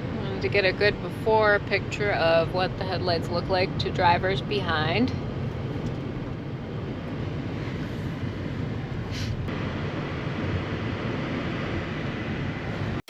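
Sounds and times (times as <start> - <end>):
car road and engine rumble: 0.0 - 13.0
brief hiss: 9.1 - 9.5.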